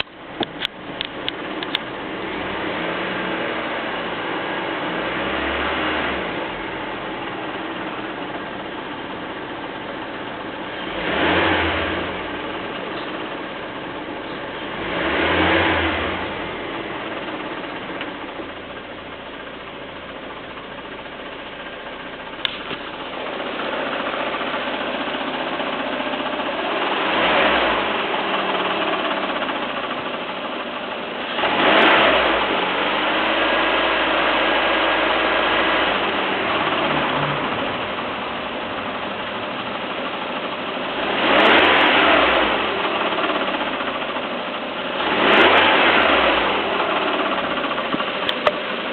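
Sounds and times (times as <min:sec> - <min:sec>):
engine clacking noise: 0:00.0 - 0:02.2, 0:21.2 - 0:48.9
car engine revving: 0:00.0 - 0:19.1, 0:22.1 - 0:48.9.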